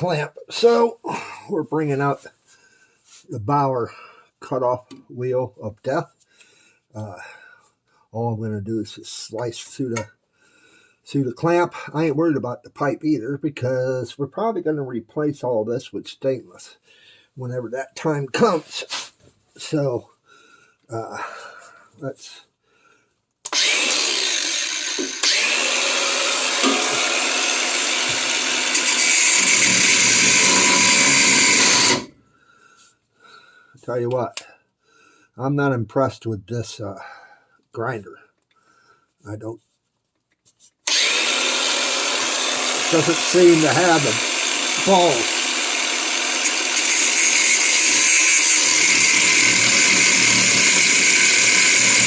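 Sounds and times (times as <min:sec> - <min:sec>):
grinder cutting steel: 0:23.5 - 0:32.1, 0:40.9 - 0:52.0.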